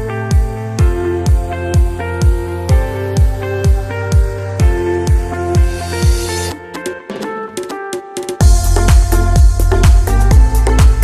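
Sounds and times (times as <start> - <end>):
deep drum thumps: 8.4 - 11.0.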